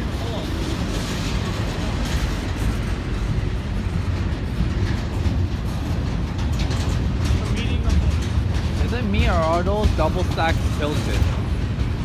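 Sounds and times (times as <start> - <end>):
freight train wheels rumbling: 0.0 - 12.0.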